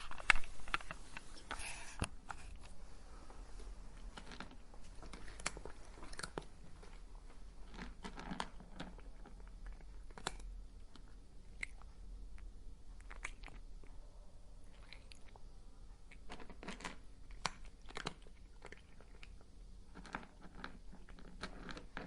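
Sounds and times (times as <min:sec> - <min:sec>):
cat crunching dry kibble: 0:04.0 - 0:06.9, 0:07.6 - 0:11.8, 0:13.0 - 0:13.6, 0:16.1 - 0:22.0.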